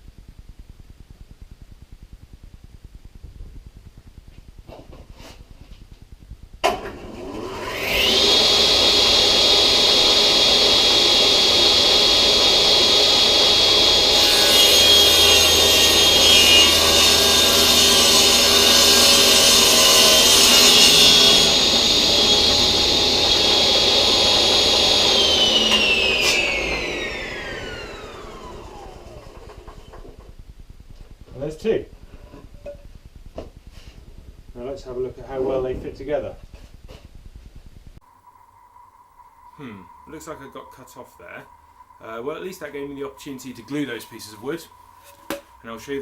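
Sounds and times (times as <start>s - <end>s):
table saw motor whining: 6.7s - 30.1s, 39.2s - 46.0s
saw blade cutting wood: 7.2s - 27.2s, 39.7s - 46.0s.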